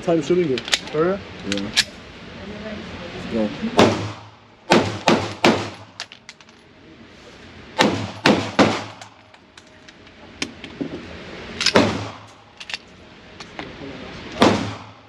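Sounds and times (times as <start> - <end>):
pistol shots: 3.8 - 6.0, 7.8 - 9.2, 11.6 - 12.3, 14.4 - 15.0.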